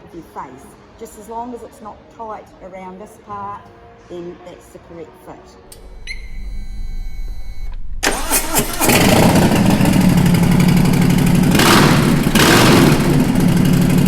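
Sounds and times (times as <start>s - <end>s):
steady tone: 5.7s - 12.4s
motorcycle engine running and revving: 8.8s - 14.0s.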